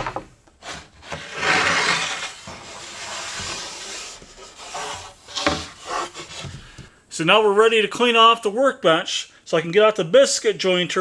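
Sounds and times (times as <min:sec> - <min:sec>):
wood knocks: 0:00.0 - 0:01.2, 0:03.4 - 0:06.9
wood scraping and rubbing: 0:00.0 - 0:06.9.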